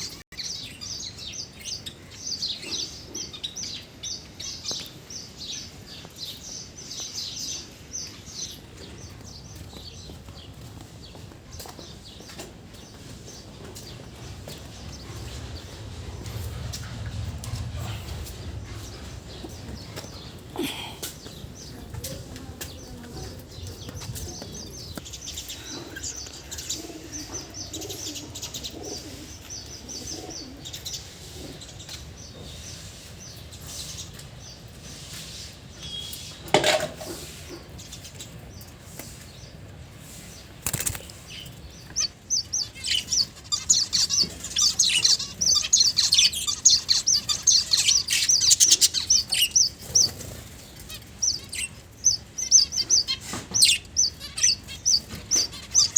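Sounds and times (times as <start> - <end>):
finches chirping: 40.2 - 55.9.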